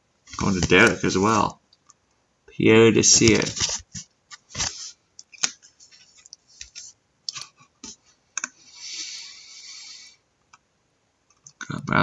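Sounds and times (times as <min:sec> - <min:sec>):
cards sliding rustle: 0:03.2 - 0:08.0
cards clicking and scraping: 0:03.2 - 0:08.6.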